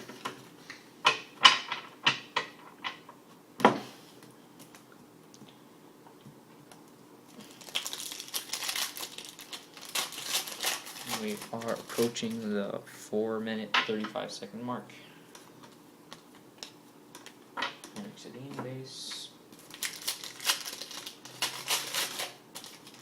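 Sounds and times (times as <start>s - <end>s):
wrapper crinkling: 7.3s - 12.6s, 19.5s - 23.0s.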